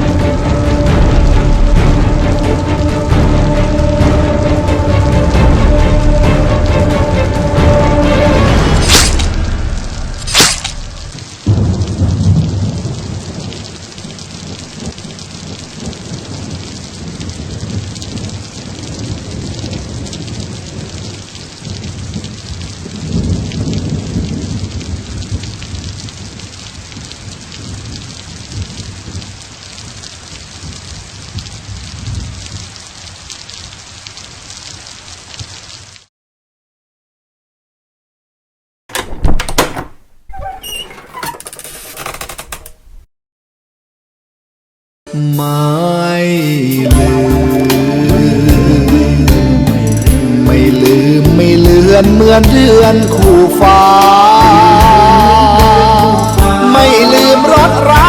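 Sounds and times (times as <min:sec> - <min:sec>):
thunder cracks: 0:00.0 - 0:29.4
thunder rumble: 0:00.0 - 0:32.9
steady rain hiss: 0:00.0 - 0:36.1, 0:46.1 - 0:58.0.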